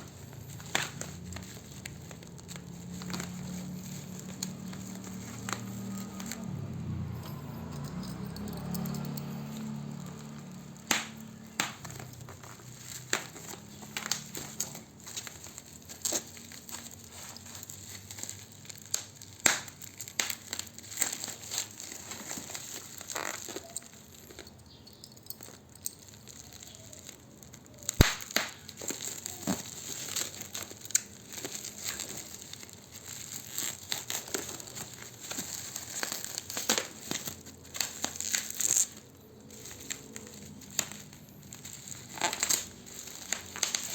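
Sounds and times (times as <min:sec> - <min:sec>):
plastic film and paper crinkling: 0:00.0 - 0:43.9
sharp snap: 0:28.0 - 0:28.6.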